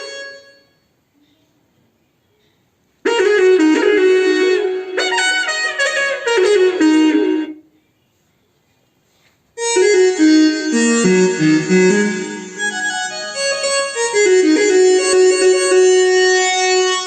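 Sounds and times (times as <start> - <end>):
electronic keyboard melody: 0.0 - 0.9, 3.1 - 7.7, 9.6 - 17.0.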